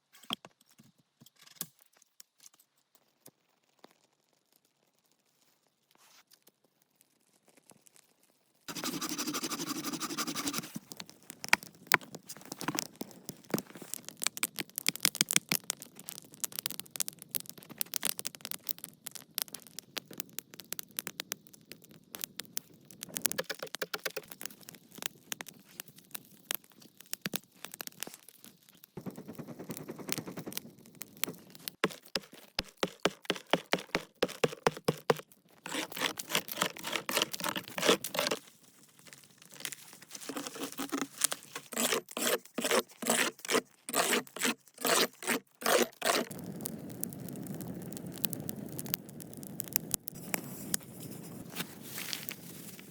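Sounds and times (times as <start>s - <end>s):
sharp crackles and scraping: 0.0s - 52.9s.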